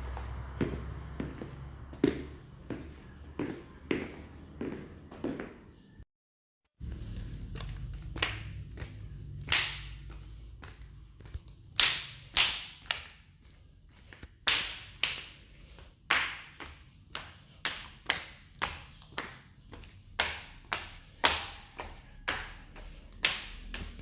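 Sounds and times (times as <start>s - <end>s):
footsteps with scraping scuffs: 0.0s - 6.0s, 6.8s - 11.8s, 16.7s - 24.0s.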